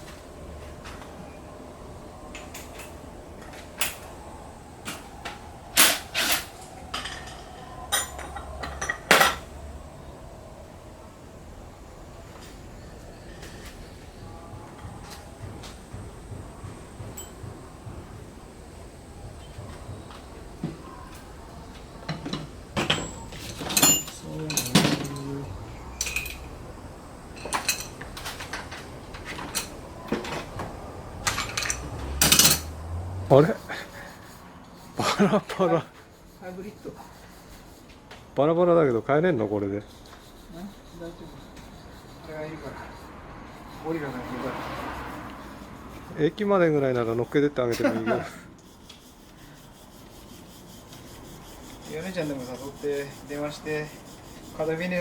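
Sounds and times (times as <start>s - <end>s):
tools clinking on a workbench: 5.8s - 9.5s, 17.0s - 17.5s, 22.1s - 26.6s, 27.4s - 33.2s.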